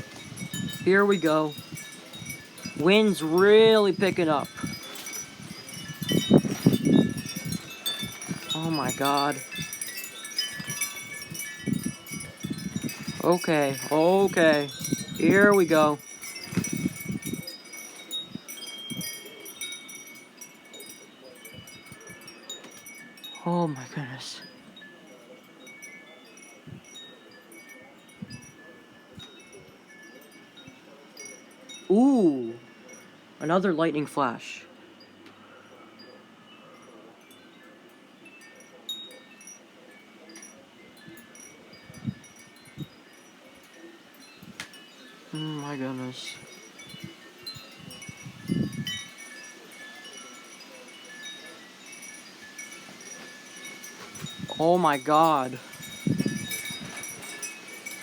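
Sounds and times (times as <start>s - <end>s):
gusty wind: 0.0s - 17.5s, 46.3s - 49.2s, 53.9s - 58.0s
wind chimes tinkling: 0.0s - 58.0s.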